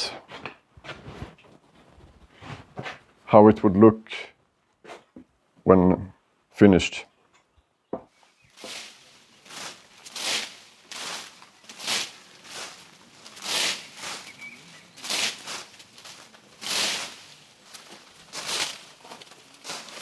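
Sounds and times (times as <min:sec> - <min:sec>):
hedge hook swishing through foliage: 0:08.6 - 0:20.0.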